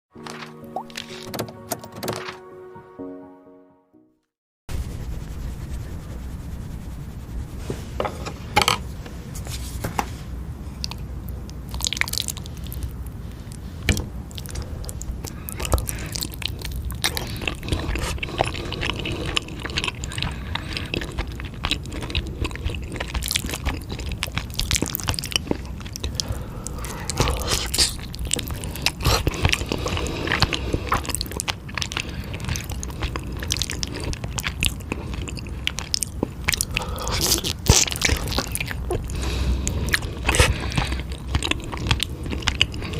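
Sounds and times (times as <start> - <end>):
person chewing with wet smacks: 10.8 - 42.9.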